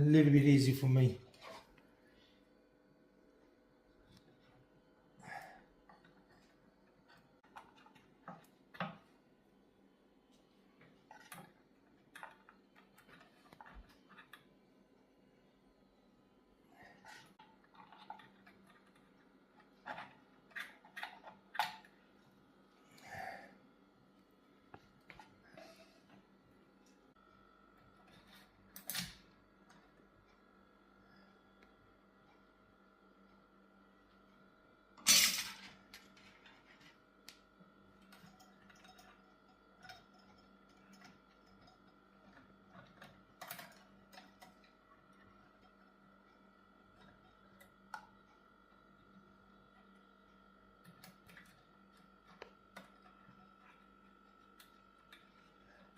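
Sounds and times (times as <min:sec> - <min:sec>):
faint steady hum: 0:00.0 - 0:55.9
small parts clicking and rustling: 0:35.0 - 0:48.4.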